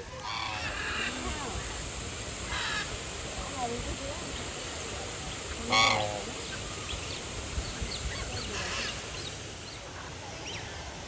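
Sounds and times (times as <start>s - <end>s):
geese honking: 0.2s - 1.4s, 5.6s - 6.5s.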